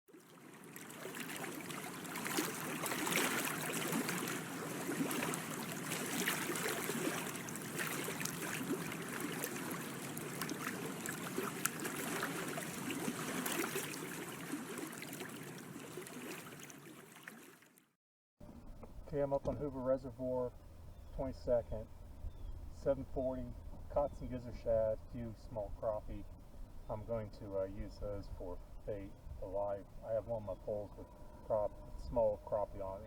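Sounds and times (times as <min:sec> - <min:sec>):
water lapping and splashing: 0:00.1 - 0:18.0.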